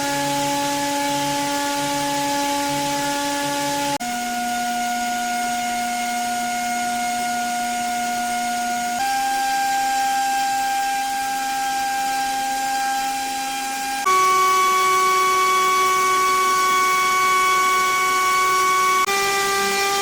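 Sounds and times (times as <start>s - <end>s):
drone propeller motor whine: 0.0s - 20.0s.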